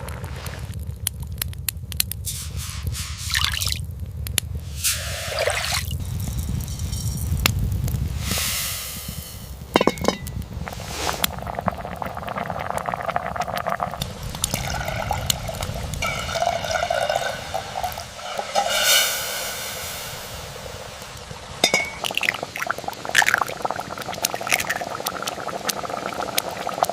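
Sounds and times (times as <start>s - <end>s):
liquid pouring and splashing: 2.3s - 3.8s, 4.7s - 7.5s, 8.1s - 26.9s
steady low rumble: 3.8s - 5.2s, 5.9s - 24.1s.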